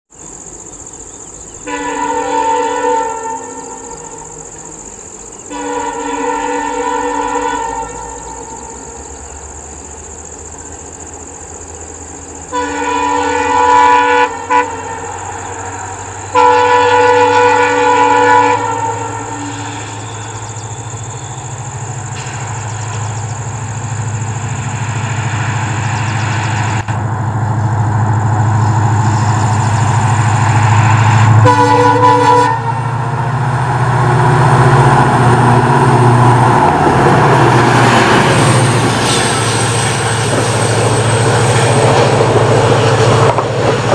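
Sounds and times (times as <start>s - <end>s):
train rushing past: 0.2s - 43.9s
locomotive horn blasts: 1.6s - 4.4s, 5.5s - 9.0s, 12.5s - 15.3s, 16.3s - 21.5s, 30.9s - 33.1s
diesel engine rumble: 19.6s - 43.9s.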